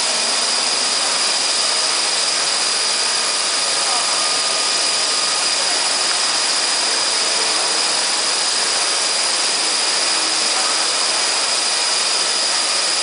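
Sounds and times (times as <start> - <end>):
machining center hiss and whine: 0.0 - 13.0.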